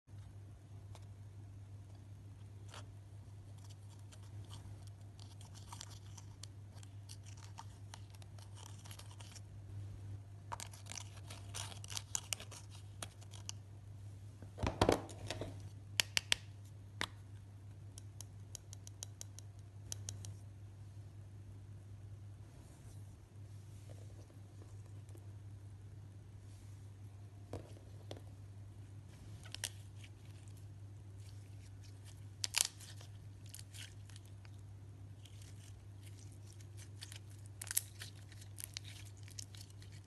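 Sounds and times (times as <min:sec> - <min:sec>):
low steady hum: 0:00.0 - 0:40.0
slime clicks and crackles: 0:31.2 - 0:34.6, 0:35.2 - 0:40.0.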